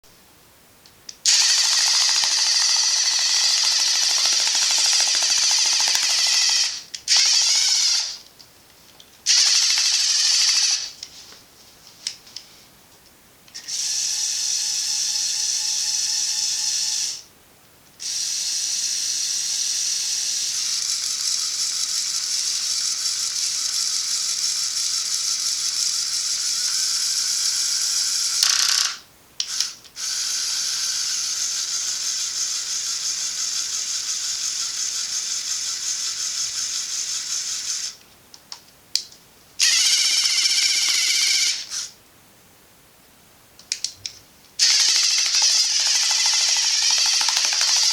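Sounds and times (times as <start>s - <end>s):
small electric motors whirring: 1.2s - 8.2s, 9.3s - 11.0s, 13.6s - 17.2s, 18.0s - 38.0s, 39.6s - 41.9s, 44.6s - 47.9s
plastic gears whirring: 1.3s - 8.1s, 28.2s - 38.0s, 39.6s - 41.9s, 44.6s - 47.9s.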